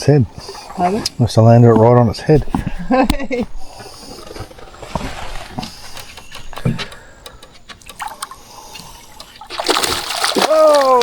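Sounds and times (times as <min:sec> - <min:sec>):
water lapping: 0:00.0 - 0:01.9, 0:02.5 - 0:11.0
small clicks: 0:05.9 - 0:08.3.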